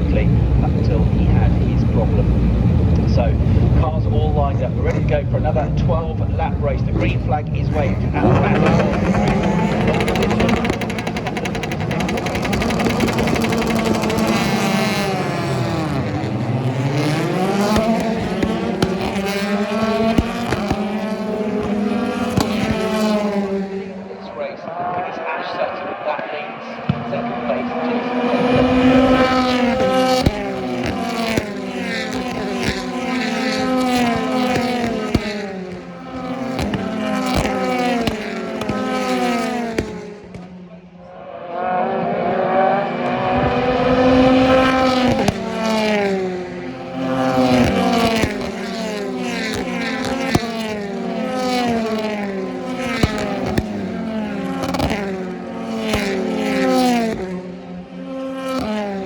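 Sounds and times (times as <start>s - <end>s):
racing car engines revving: 0.0s - 59.0s
gear change cracks: 8.2s - 14.7s.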